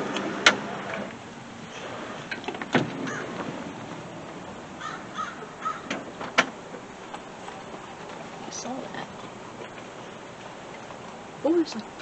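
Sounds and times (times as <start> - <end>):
outdoor background noise: 0.0 - 12.0
crow cawing: 4.8 - 5.9.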